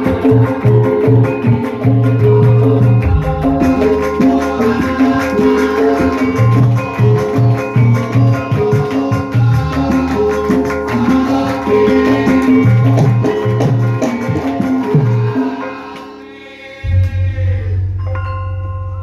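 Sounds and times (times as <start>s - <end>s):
drumming: 0.0s - 15.6s
low sustained gong tones: 3.0s - 4.7s.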